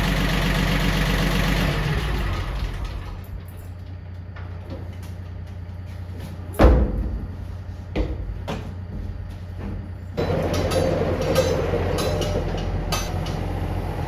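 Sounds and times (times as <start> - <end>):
diesel engine running: 0.0 - 14.0
loud metallic clunk: 10.2 - 13.7.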